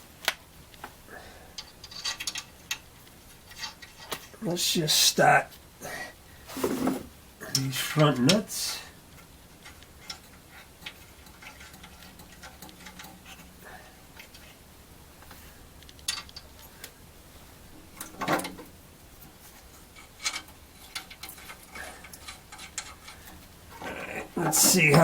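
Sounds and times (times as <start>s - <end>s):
metal nuts clicking and clinking: 1.6s - 2.9s, 9.6s - 13.6s, 15.8s - 16.7s, 19.9s - 25.0s.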